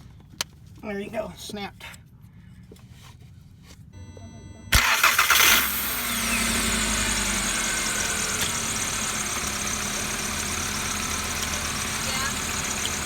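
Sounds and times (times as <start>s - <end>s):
car engine cranking: 4.0s - 13.0s
car engine idling: 4.0s - 13.0s.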